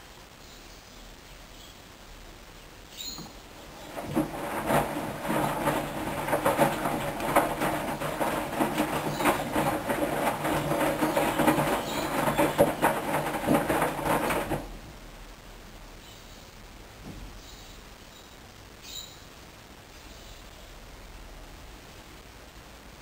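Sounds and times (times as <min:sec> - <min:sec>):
wet laundry tumbling and knocking: 0:03.2 - 0:15.0
washing machine motor hum: 0:03.2 - 0:15.2.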